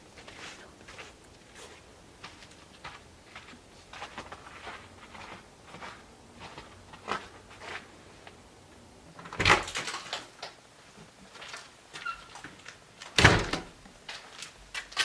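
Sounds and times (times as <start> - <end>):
footsteps walking: 0.0 - 15.0
door banging: 13.2 - 13.8.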